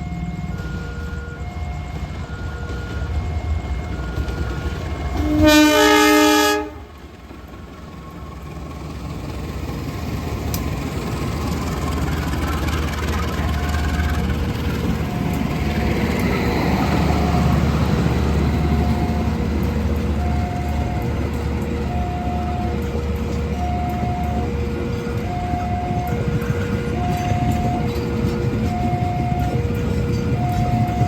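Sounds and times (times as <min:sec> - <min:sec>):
train rumbling past: 0:00.0 - 0:31.0
train horn blast: 0:05.1 - 0:07.0.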